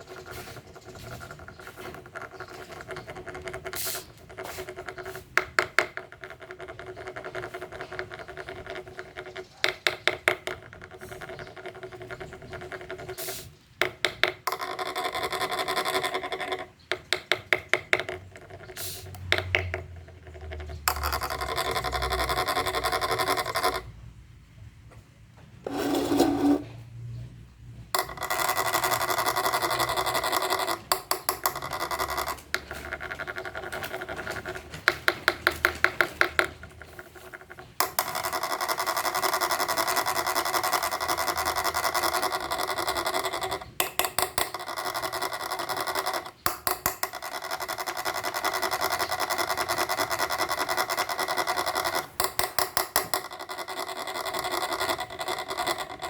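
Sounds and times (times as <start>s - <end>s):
scraping and rasping on wood: 25.7s - 26.8s.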